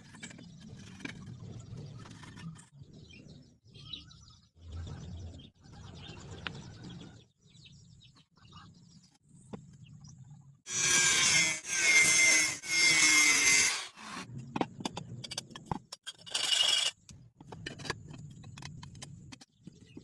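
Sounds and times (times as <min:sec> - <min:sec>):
tool cutting metal pipe: 0:10.7 - 0:14.3.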